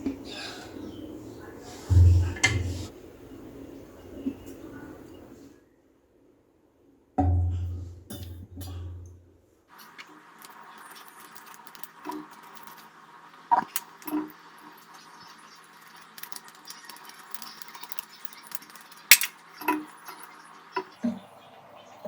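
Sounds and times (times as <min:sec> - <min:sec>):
faint steady background noise: 0:00.0 - 0:22.0
metallic clinks of tools: 0:13.8 - 0:20.9.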